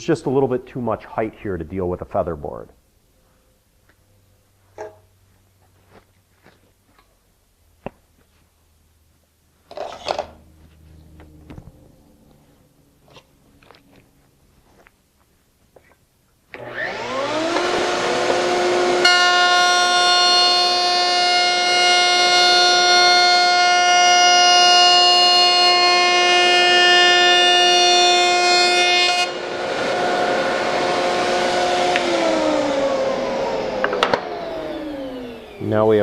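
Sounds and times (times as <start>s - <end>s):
router bit cutting wood: 16.5s - 35.8s
router high-pitched whine: 16.6s - 35.8s.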